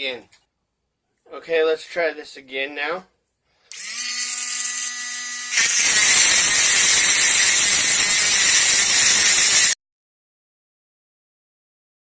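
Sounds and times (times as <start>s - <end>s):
cutoff wheel grinding screw: 3.7s - 9.8s
rotary tool motor whine: 3.7s - 9.8s.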